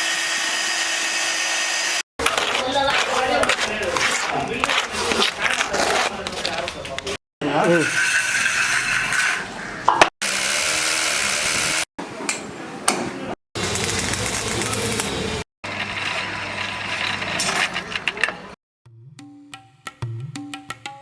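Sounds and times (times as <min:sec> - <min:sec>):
power tool running: 0:00.0 - 0:04.1, 0:10.2 - 0:11.9, 0:13.6 - 0:17.8.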